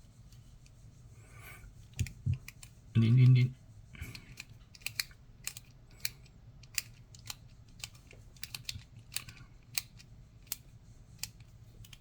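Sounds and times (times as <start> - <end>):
plastic clicks of lock wheels turning: 4.1 - 10.6.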